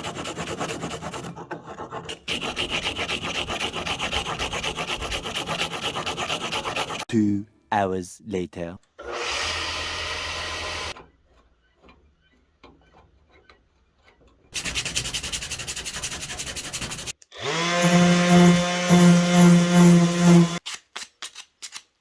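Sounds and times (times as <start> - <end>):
hand plane rubbing: 0.0 - 7.1
power tool motor humming: 9.0 - 11.0, 17.4 - 20.6.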